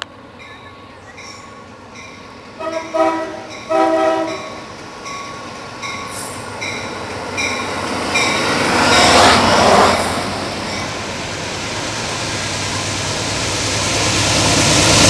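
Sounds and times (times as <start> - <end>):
train rumble and wheel noise: 0.0 - 15.0
locomotive bell ringing: 0.4 - 9.1
train horn blast: 2.6 - 4.6, 9.0 - 10.1.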